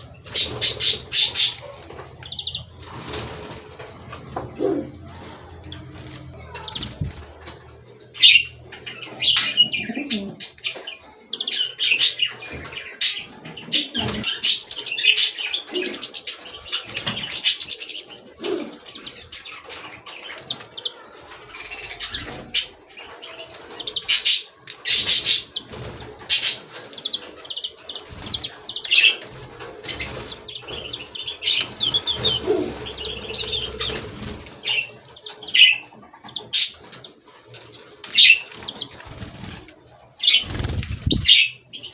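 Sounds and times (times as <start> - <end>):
wing flapping: 0.0 - 7.8, 24.9 - 35.2, 36.4 - 41.6
songbirds chirping: 0.0 - 41.9.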